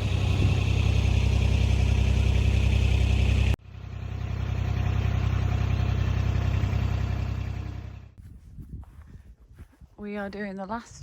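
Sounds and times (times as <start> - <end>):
vehicle engine running: 0.0 - 8.2.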